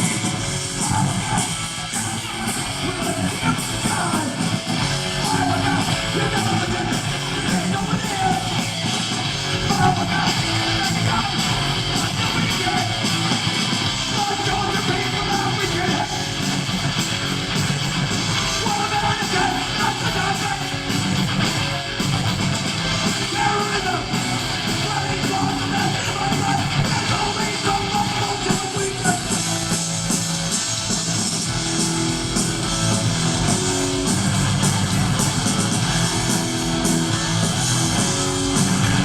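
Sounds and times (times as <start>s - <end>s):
distorted electric guitar: 0.0s - 39.0s
punk band playing loudly: 0.0s - 39.0s
person yelling vocals: 5.2s - 8.6s.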